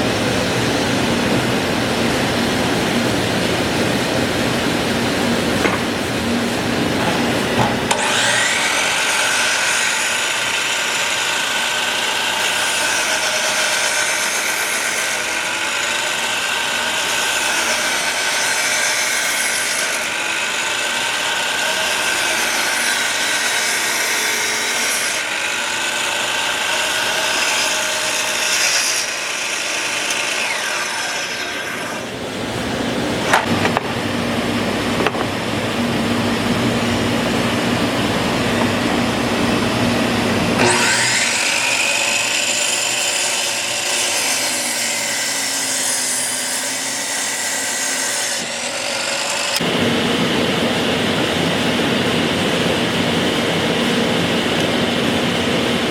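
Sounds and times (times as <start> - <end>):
power tool whining on wood: 7.6 - 32.1, 40.6 - 49.8.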